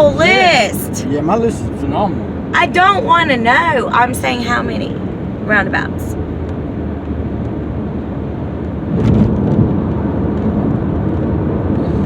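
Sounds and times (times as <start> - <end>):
low rumbling noise: 0.0 - 12.0.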